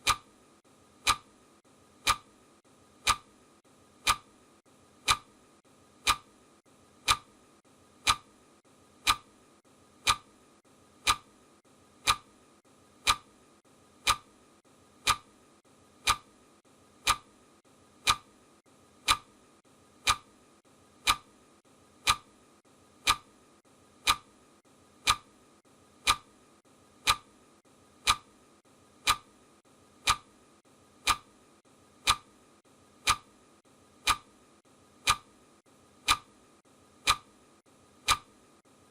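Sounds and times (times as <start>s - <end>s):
clock ticking: 0.0s - 0.4s, 1.0s - 1.4s, 2.0s - 2.4s, 3.0s - 3.4s, 4.0s - 4.4s, 5.0s - 5.4s, 6.0s - 6.4s, 7.0s - 7.4s, 8.0s - 8.4s, 9.0s - 9.4s, 10.0s - 10.4s, 11.0s - 11.4s, 12.0s - 12.4s, 13.0s - 13.4s, 14.0s - 14.4s, 15.0s - 15.4s, 16.0s - 16.4s, 17.0s - 17.4s, 18.0s - 18.4s, 19.0s - 19.4s, 20.0s - 20.4s, 21.0s - 21.4s, 22.0s - 22.4s, 23.0s - 23.4s, 24.0s - 24.3s, 25.0s - 25.3s, 26.0s - 26.3s, 27.0s - 27.4s, 28.0s - 28.4s, 29.0s - 29.4s, 30.0s - 30.4s, 31.0s - 31.3s, 32.0s - 32.4s, 33.0s - 33.3s, 34.0s - 34.4s, 35.0s - 35.4s, 36.0s - 36.4s, 37.0s - 37.4s, 38.0s - 38.4s.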